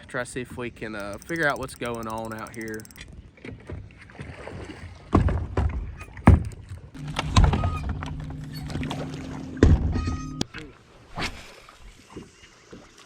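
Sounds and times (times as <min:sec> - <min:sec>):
low motor hum: 0:07.0 - 0:10.5.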